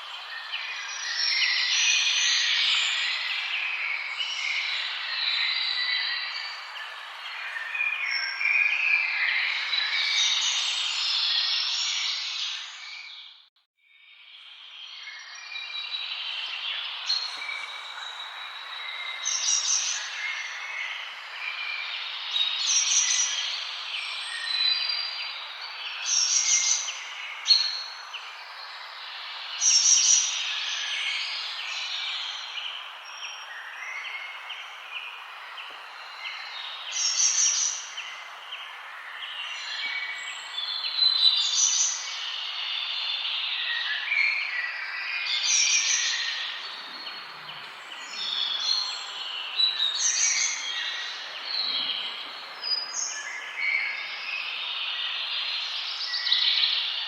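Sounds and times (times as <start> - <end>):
small bird chirps and calls: 39.1 - 57.0.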